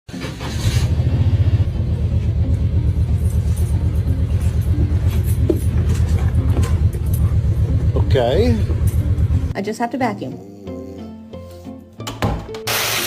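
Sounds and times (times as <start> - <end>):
loud pulsing low rumble: 1.4 - 9.5.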